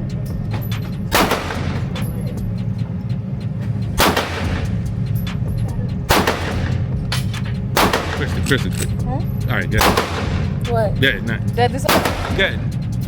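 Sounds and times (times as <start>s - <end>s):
steady low hum: 0.0s - 13.0s
handgun shots with echo: 1.1s - 1.8s, 4.0s - 4.6s, 6.1s - 6.7s, 7.8s - 8.3s, 9.8s - 10.4s
faint gunshots: 1.1s - 2.0s, 4.0s - 4.7s, 6.1s - 6.8s, 7.8s - 8.5s, 9.8s - 10.5s, 11.9s - 12.6s.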